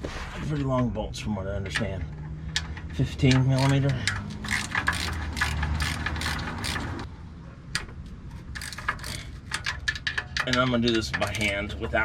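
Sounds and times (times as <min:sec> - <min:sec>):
hand ratchet clicking: 0:02.5 - 0:07.1, 0:08.4 - 0:12.0.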